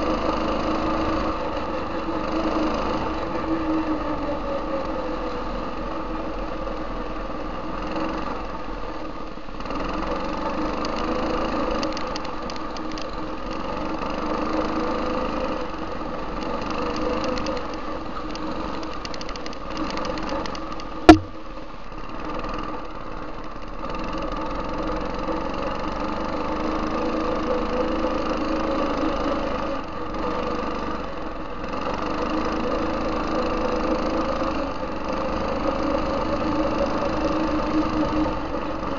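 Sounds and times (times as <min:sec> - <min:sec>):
go-kart engine running: 0:00.0 - 0:38.9
sharp loud knock: 0:21.1 - 0:21.4.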